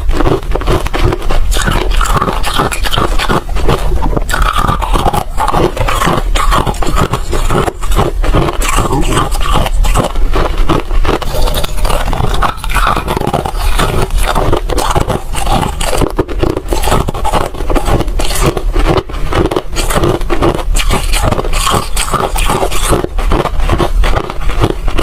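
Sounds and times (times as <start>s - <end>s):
ice being chewed: 0.0s - 25.0s.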